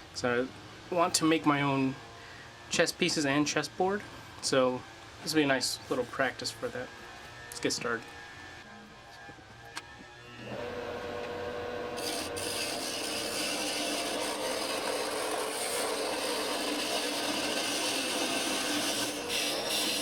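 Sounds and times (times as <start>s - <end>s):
lathe tool scraping wood: 10.0s - 20.0s.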